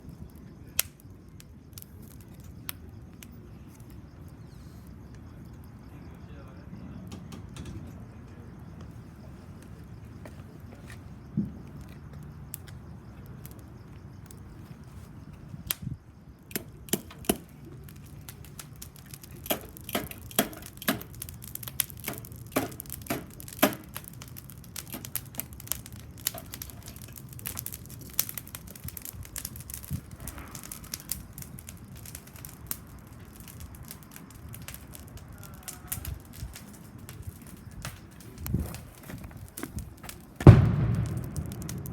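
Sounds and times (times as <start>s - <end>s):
fire crackling and popping: 0.0s - 41.9s
low steady rumble: 40.5s - 41.9s.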